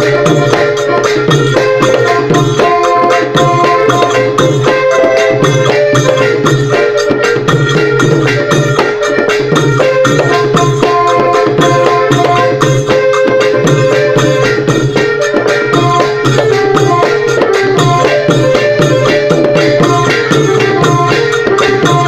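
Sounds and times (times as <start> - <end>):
held melody line: 0.0 - 22.0
long drums beating: 0.0 - 22.0.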